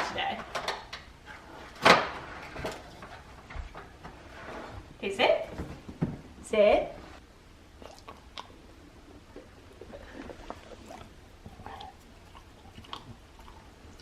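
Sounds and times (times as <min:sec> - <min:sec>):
puppy chewing a treat: 0:07.8 - 0:14.0.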